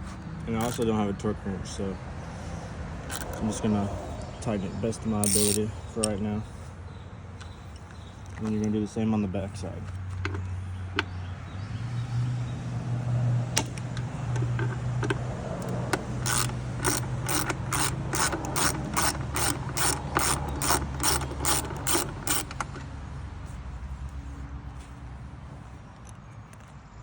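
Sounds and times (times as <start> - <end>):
ratchet clicks: 0.5 - 1.0, 3.0 - 3.6, 5.2 - 6.2, 13.6 - 22.9.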